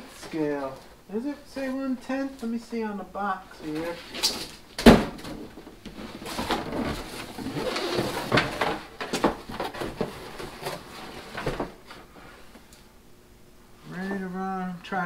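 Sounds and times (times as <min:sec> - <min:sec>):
cardboard box rustling and scraping: 0:05.9 - 0:11.9.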